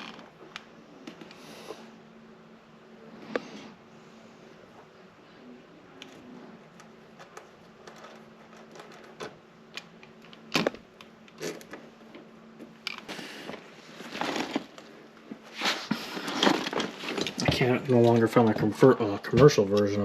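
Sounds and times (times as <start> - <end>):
rustling scrape: 13.1 - 17.4.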